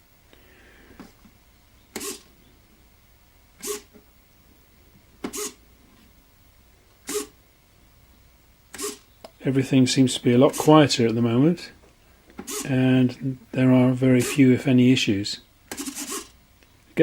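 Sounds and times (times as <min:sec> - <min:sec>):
small servo whirs: 0:01.9 - 0:02.3, 0:03.6 - 0:03.9, 0:05.2 - 0:05.6, 0:07.1 - 0:07.4, 0:08.7 - 0:09.1, 0:12.4 - 0:12.7, 0:15.7 - 0:16.4.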